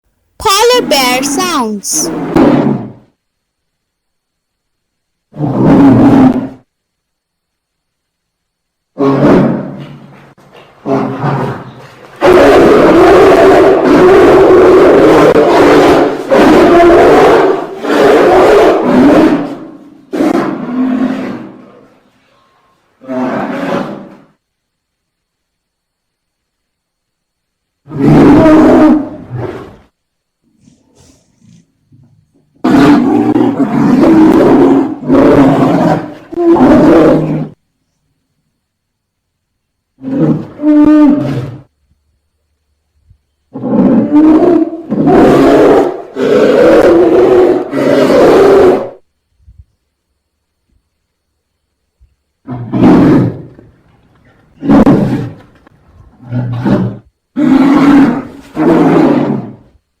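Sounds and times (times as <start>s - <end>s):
polar bear roaring: 32.6s - 37.6s, 43.5s - 49.0s, 56.1s - 59.6s.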